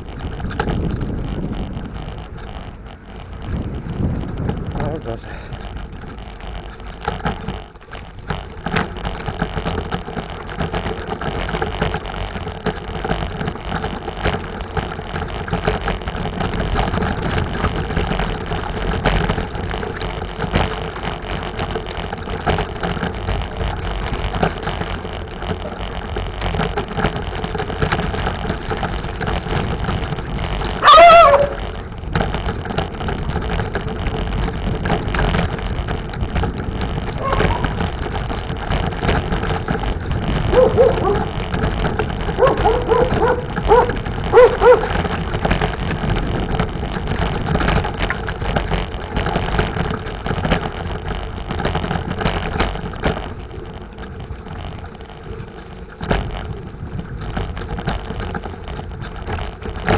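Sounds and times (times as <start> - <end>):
bicycle rolling noise: 0.0 - 59.9
wind noise: 0.0 - 59.9
dog barking: 30.8 - 31.6, 37.2 - 37.8, 40.5 - 41.3, 42.4 - 45.0.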